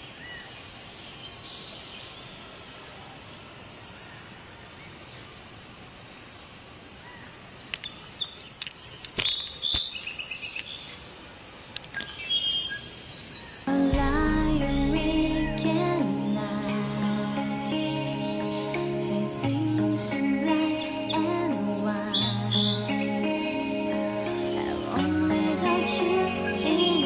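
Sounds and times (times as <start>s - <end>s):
insects buzzing: 0.0s - 12.2s, 13.7s - 27.0s
sharp chirps and clicks: 0.0s - 12.2s
birds chirping: 7.0s - 16.4s, 17.3s - 27.0s.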